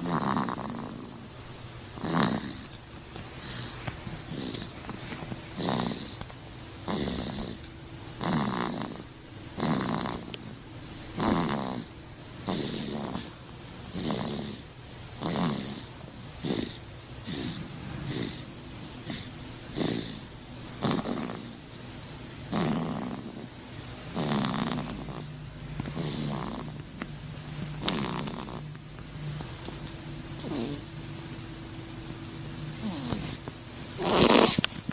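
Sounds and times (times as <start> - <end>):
person snoring: 0.0 - 1.3, 2.0 - 2.8, 5.6 - 6.2, 6.9 - 7.6, 8.2 - 21.6, 22.5 - 26.9, 27.8 - 28.8, 30.4 - 30.9, 32.6 - 33.4, 34.0 - 34.6.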